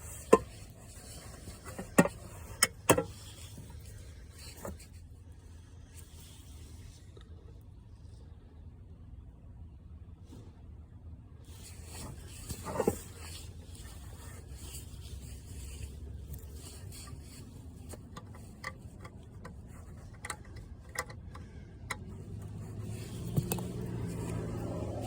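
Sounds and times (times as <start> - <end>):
connector plugs clicking: 17.8 - 22.6.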